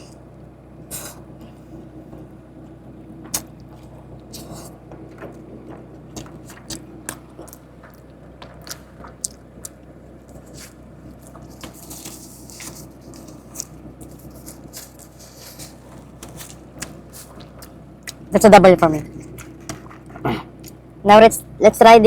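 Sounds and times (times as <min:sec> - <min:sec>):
wet chewing and bites: 0:03.2 - 0:18.4, 0:19.0 - 0:20.8.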